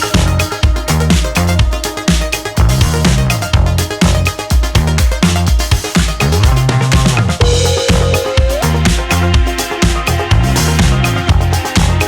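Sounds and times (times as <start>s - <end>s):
electronic dance music: 0.0s - 12.0s
held synth note: 7.4s - 11.6s.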